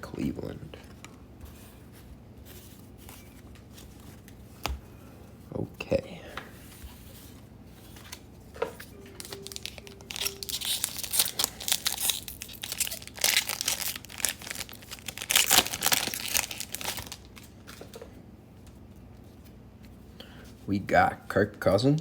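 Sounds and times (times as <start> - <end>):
plastic wrapper tearing and crinkling: 9.2 - 17.8.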